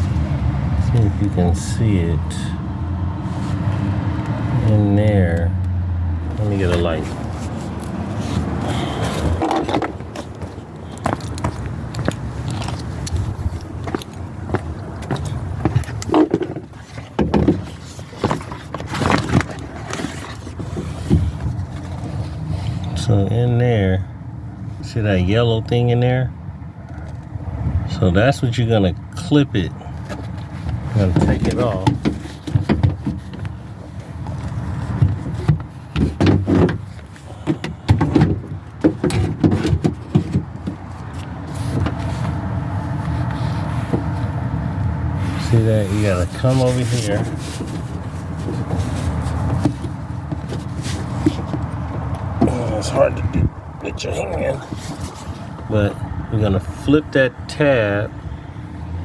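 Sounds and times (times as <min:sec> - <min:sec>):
handling scrapes and knocks: 0:06.3 - 0:23.0, 0:29.9 - 0:55.8.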